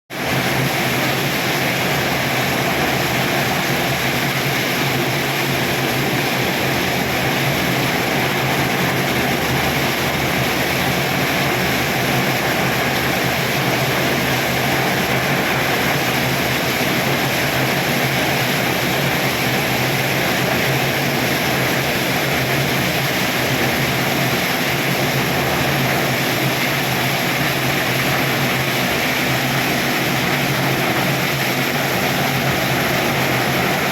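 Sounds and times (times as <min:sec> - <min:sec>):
heavy rain pouring: 0:00.1 - 0:33.9.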